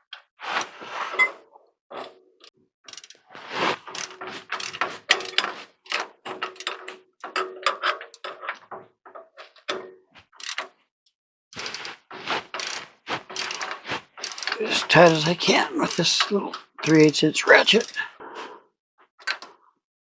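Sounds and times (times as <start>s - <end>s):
ratchet clicking: 2.9s - 3.2s, 3.9s - 6.9s, 10.4s - 10.7s, 11.6s - 17.2s.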